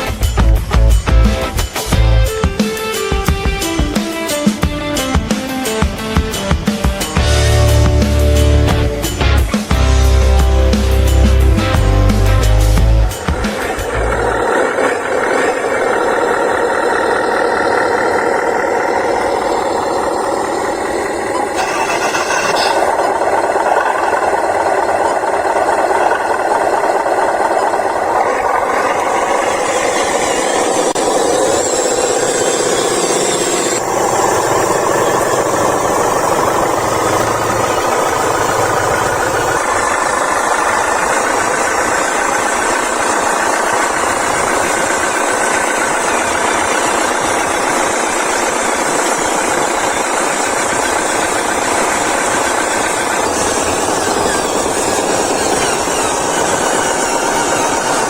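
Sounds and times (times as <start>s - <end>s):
toy electric motors whirring: 13.1s - 25.4s, 27.6s - 58.0s.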